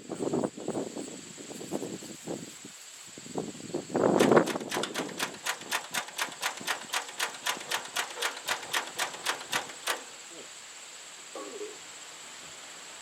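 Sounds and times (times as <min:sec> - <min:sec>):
loud knock: 0:04.2 - 0:10.1
engine cranking metallic clicks: 0:04.2 - 0:10.4.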